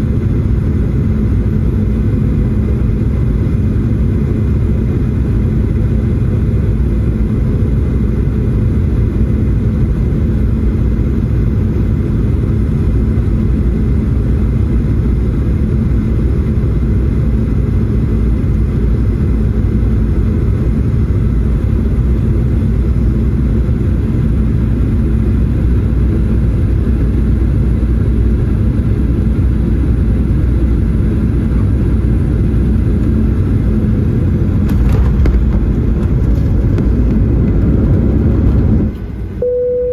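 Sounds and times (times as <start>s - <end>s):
airplane cabin engine roar: 0.0s - 39.9s
faint steady hum: 25.8s - 39.9s.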